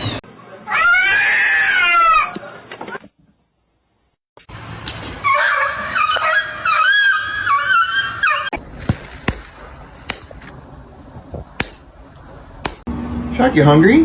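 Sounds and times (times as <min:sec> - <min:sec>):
cat yowling: 0:00.7 - 0:02.4
sharp clicks or knocks: 0:08.8 - 0:10.6, 0:11.6 - 0:12.0, 0:12.6 - 0:12.9.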